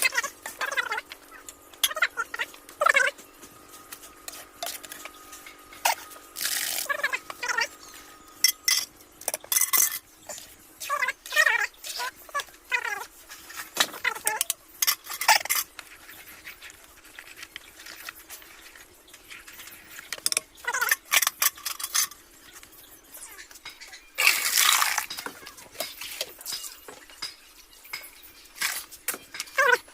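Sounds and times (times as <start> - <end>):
metal utensils clinking on cookware: 8.4 - 12.5, 13.5 - 15.8, 20.2 - 22.6, 25.0 - 29.8.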